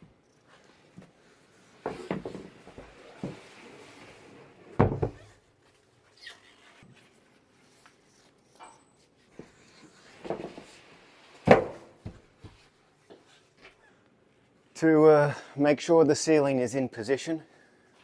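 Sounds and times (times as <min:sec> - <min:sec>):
wooden panels knocking and thumping: 0:04.8 - 0:05.2, 0:11.4 - 0:12.2.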